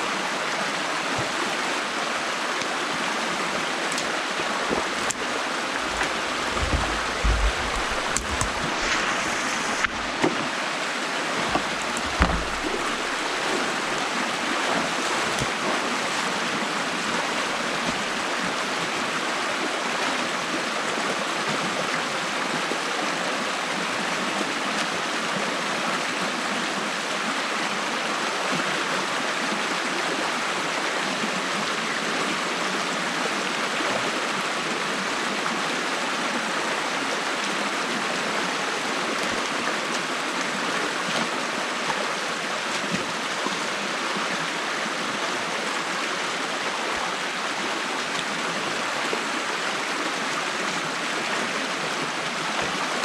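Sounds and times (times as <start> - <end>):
stream water rushing: 0.0 - 53.0
low thuds and knocks: 4.7 - 10.4, 11.4 - 13.6.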